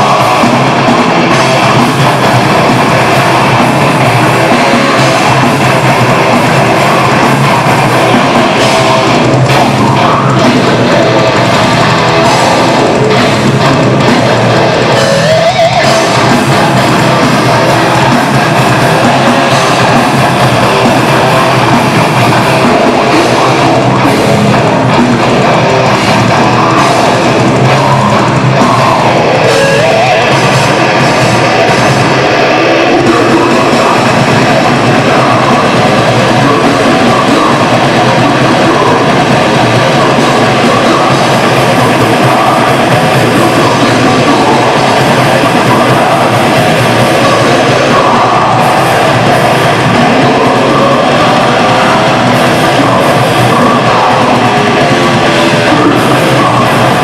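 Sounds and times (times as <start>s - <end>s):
distorted electric guitars: 0.0s - 57.0s
drum kit: 0.0s - 57.0s.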